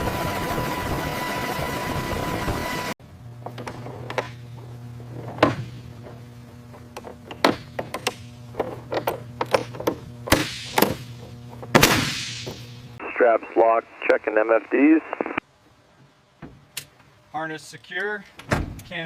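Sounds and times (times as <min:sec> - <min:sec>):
loud machine whine: 0:00.0 - 0:03.0
low machine hum: 0:00.0 - 0:16.4.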